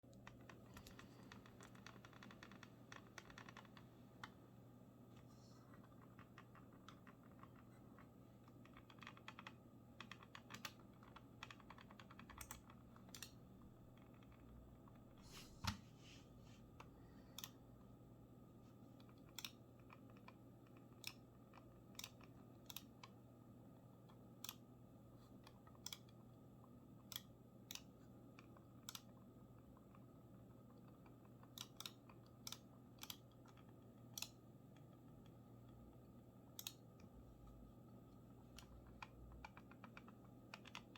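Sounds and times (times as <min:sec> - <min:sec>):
mouse shell creaking: 0:00.7 - 0:03.9.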